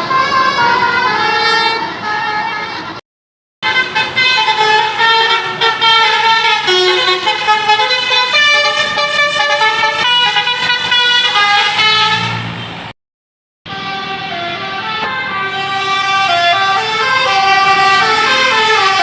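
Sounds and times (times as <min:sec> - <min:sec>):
bus musical horn playing tune: 0:00.0 - 0:03.0, 0:03.6 - 0:12.9, 0:13.7 - 0:19.0.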